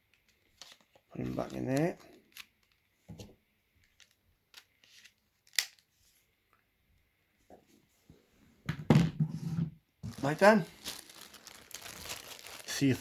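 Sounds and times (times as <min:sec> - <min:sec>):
plastic phone clicks and handling: 0:03.8 - 0:05.8.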